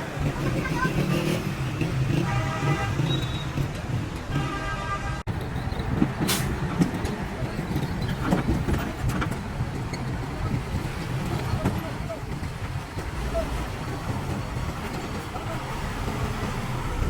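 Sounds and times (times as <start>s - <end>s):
vehicle engine rumbling: 0.0s - 17.0s.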